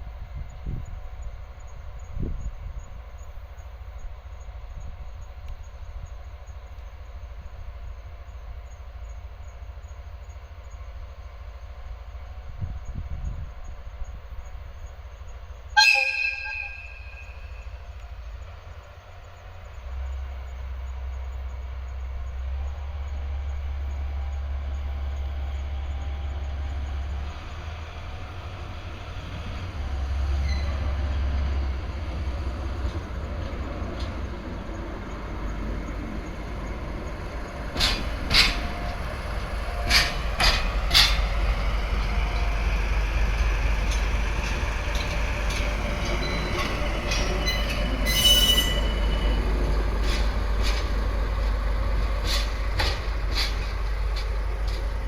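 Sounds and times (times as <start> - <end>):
high wheel squeal: 15.8 - 17.8, 30.3 - 31.0, 44.4 - 50.6
wheels clacking over rail joints: 28.0 - 55.0.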